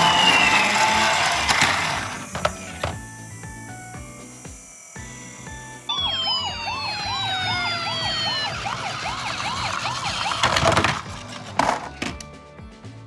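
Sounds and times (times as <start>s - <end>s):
toy siren warbling: 0.0s - 11.9s
clattering noise: 6.9s - 12.3s.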